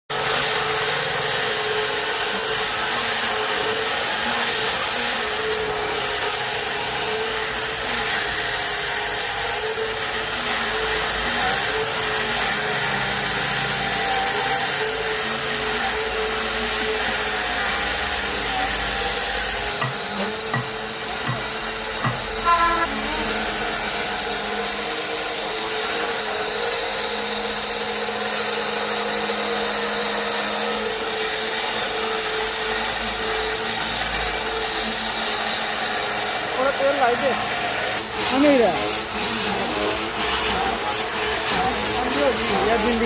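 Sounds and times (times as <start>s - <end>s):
saw cutting through wood: 0.1s - 43.0s.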